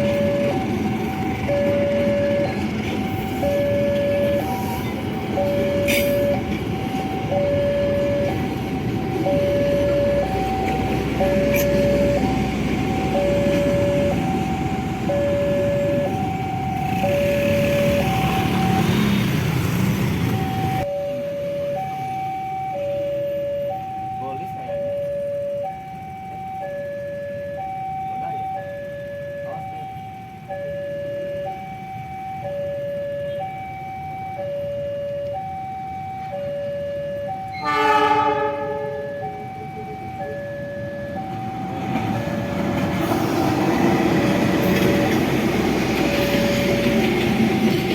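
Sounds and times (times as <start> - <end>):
level crossing alarm two-tone signal: 0.0 - 19.2, 20.2 - 47.5
locomotive horn: 37.5 - 39.2.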